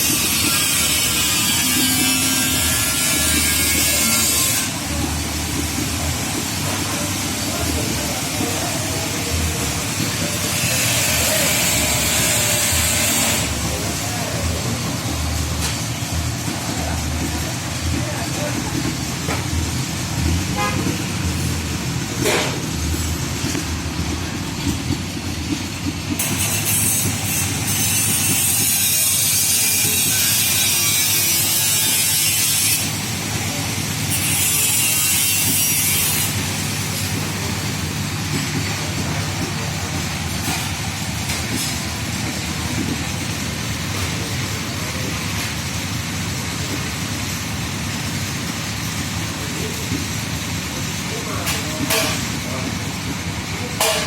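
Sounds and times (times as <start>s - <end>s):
low motor rumble: 13.4s - 26.2s.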